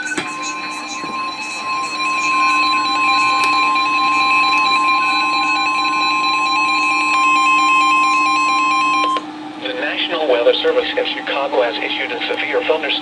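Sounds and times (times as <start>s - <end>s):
faint warbling tones: 0.0s - 9.1s
steady high alarm tone: 0.0s - 9.6s.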